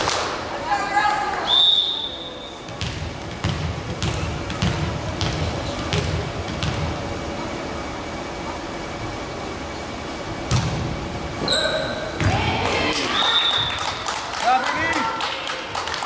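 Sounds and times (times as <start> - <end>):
volleyball bouncing on gym floor: 2.6 - 7.1, 10.5 - 10.9, 12.2 - 13.7.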